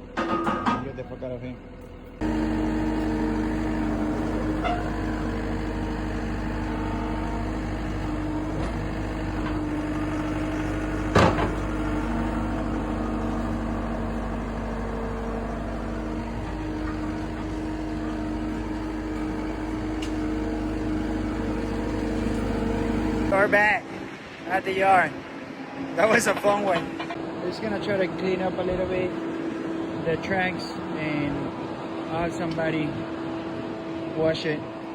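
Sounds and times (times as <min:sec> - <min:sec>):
vehicle engine running: 0:01.0 - 0:23.4.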